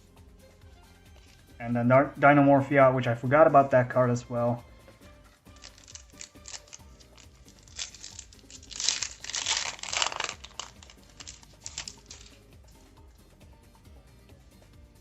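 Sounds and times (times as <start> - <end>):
faint background music: 0.0 - 15.0
foil wrapper crinkling and tearing: 5.5 - 12.8.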